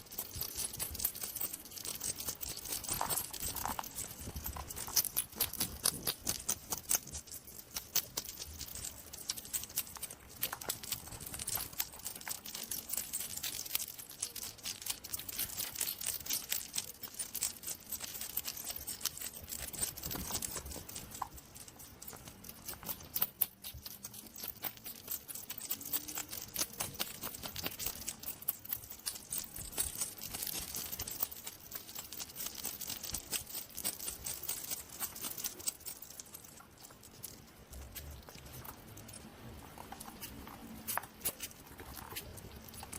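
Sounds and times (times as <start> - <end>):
hedgehog rustling and clicking: 0.0 - 42.9.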